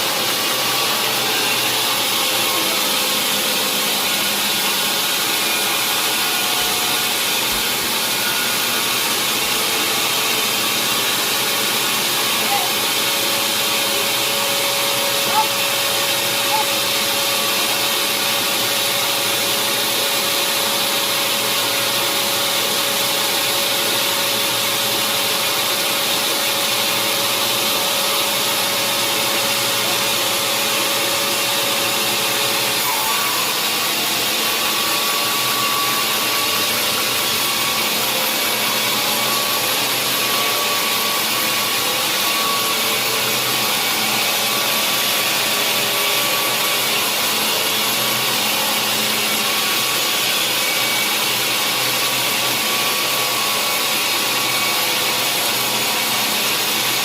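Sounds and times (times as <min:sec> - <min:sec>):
sawmill saw cutting log: 0:00.0 - 0:57.0.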